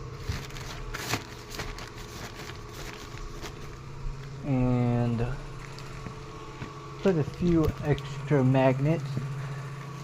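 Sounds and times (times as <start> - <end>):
plastic sheeting crackling: 0.0 - 4.4, 5.5 - 8.2
steady low hum: 0.0 - 10.0.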